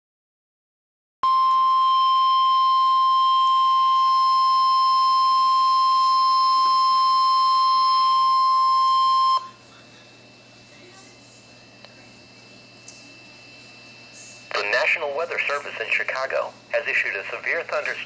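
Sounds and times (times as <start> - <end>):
loud steady alarm tone: 1.2 - 9.6
faint radio hiss: 14.1 - 18.0.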